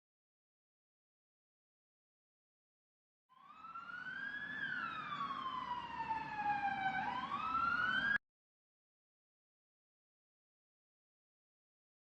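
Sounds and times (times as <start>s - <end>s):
siren wailing: 3.3s - 8.2s.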